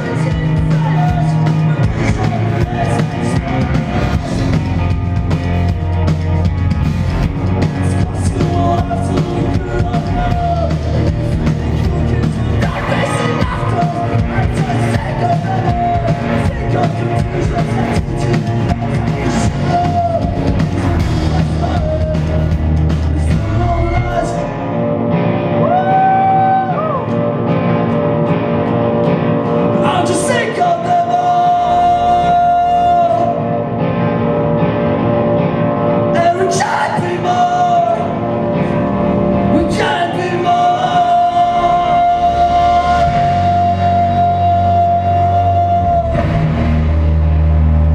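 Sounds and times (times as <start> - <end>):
person singing: 0.0 - 5.0, 7.6 - 24.8, 29.7 - 33.6, 36.1 - 46.5
hardcore band playing live: 0.0 - 47.9.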